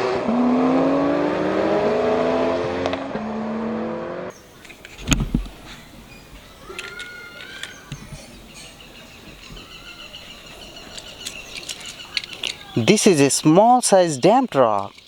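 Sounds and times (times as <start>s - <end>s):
sports car engine revving: 0.0s - 4.4s.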